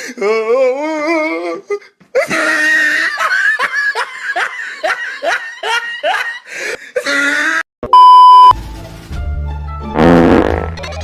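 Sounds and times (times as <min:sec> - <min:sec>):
person laughing: 0:10.5 - 0:11.0.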